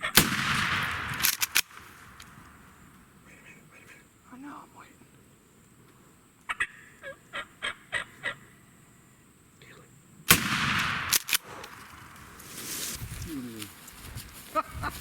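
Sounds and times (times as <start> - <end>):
shotgun blast echoing: 0.1 - 2.7, 10.3 - 12.4
sharp clicks: 0.8 - 2.4, 10.4 - 12.5
turkey calls: 6.4 - 8.7.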